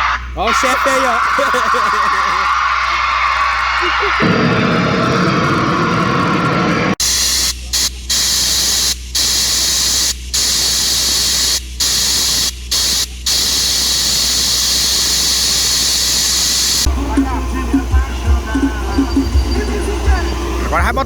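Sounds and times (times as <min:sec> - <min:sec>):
loud test hiss from speakers: 0:00.0 - 0:04.3, 0:07.0 - 0:21.0
steady low rumble: 0:16.8 - 0:21.0.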